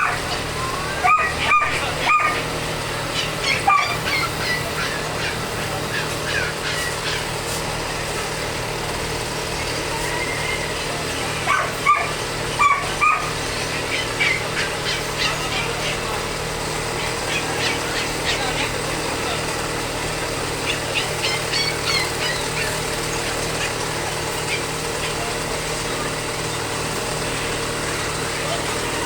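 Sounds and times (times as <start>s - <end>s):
dog barking: 0.0s - 7.3s, 11.4s - 16.1s, 16.9s - 18.8s, 20.6s - 23.8s
steady background hum: 0.0s - 29.0s.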